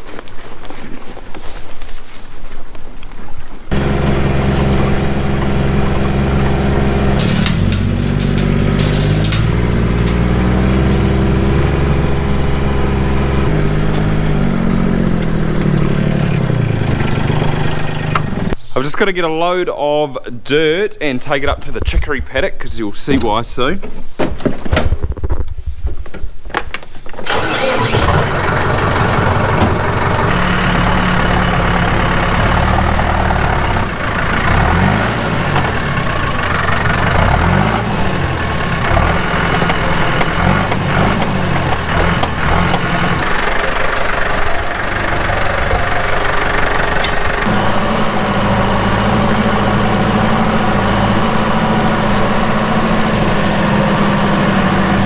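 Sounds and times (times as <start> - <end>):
vehicle engine starting and revving: 3.7 - 18.6, 27.2 - 55.0.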